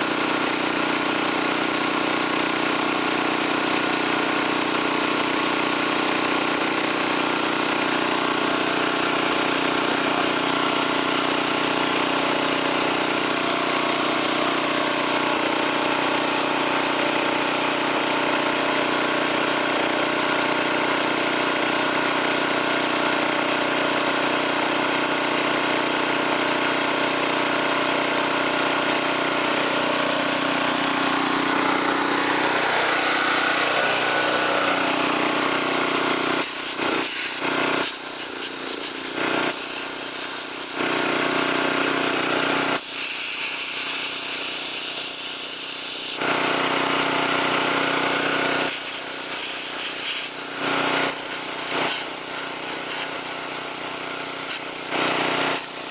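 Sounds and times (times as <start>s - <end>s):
small gasoline engine running: 0.0s - 55.9s
loud hiss: 36.4s - 40.8s, 48.7s - 50.5s.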